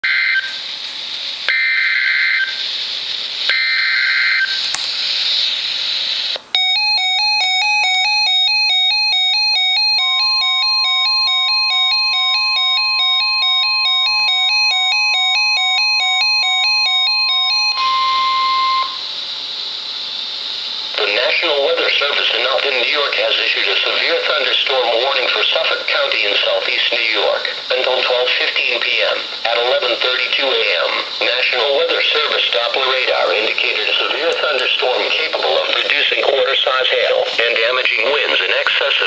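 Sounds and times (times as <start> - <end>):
receiver static hiss: 0.0 - 7.2, 16.9 - 39.0
steady warning tone: 1.4 - 39.0
electronic alarm switching tones: 1.5 - 2.7, 3.5 - 4.7, 6.5 - 19.1
buzzy data bursts: 17.8 - 39.0.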